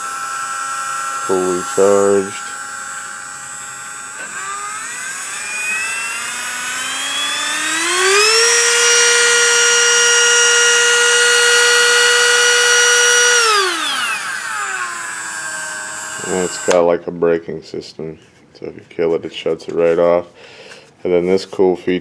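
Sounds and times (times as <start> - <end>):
rotary tool whining: 0.0 - 16.8.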